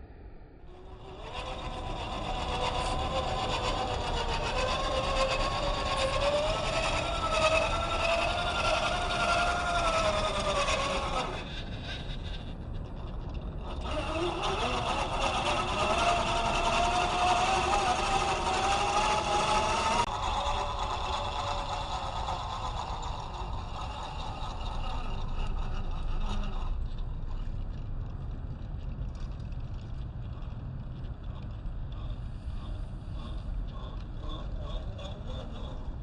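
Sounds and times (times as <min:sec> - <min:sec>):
low rumbling noise: 0:00.0 - 0:36.0
electric motor whining: 0:00.7 - 0:11.6, 0:13.6 - 0:26.8.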